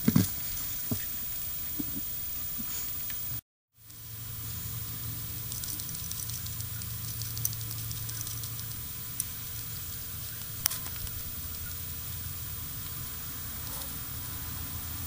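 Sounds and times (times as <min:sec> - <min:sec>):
steady low hum: 0:00.0 - 0:15.0
sharp clicks: 0:05.3 - 0:11.8.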